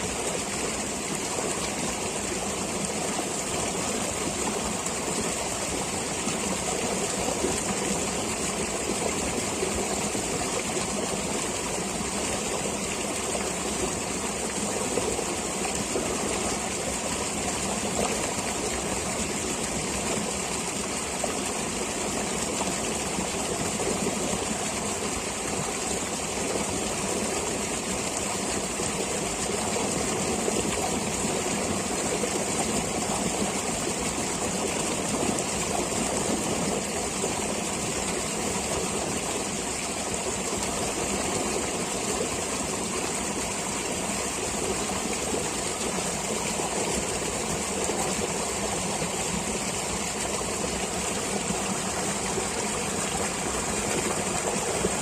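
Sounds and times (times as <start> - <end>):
stream water flowing: 0.0 - 55.0.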